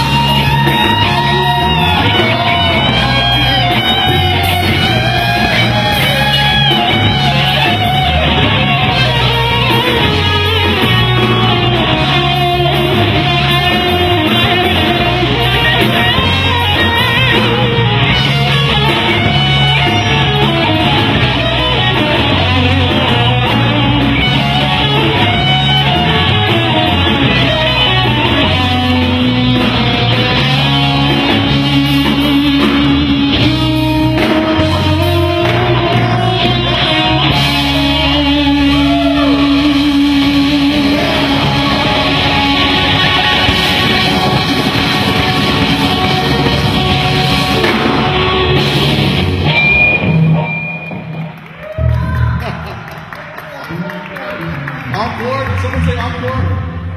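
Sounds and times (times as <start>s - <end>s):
rock music with electric guitar: 0.0s - 53.2s.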